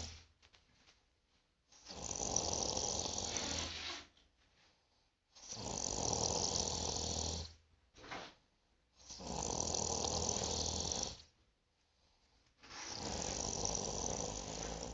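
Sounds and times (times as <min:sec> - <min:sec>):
person snoring: 0:00.0 - 0:00.2, 0:01.8 - 0:03.8, 0:05.4 - 0:07.6, 0:09.0 - 0:11.3, 0:12.8 - 0:14.9
breath sound: 0:00.0 - 0:00.3.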